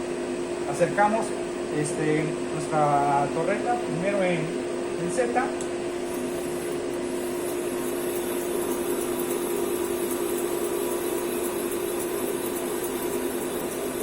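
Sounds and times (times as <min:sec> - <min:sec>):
lathe machine humming: 0:05.8 - 0:14.0.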